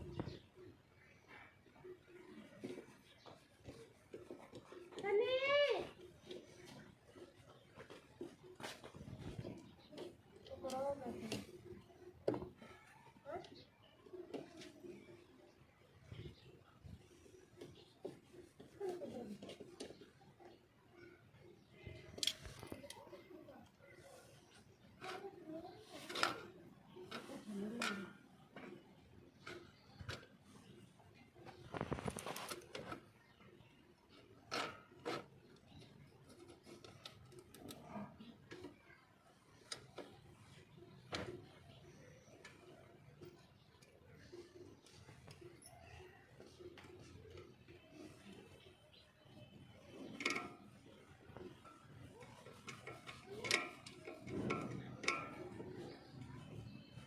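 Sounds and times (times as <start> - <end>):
parts scraping and rattling: 49.5 - 56.7.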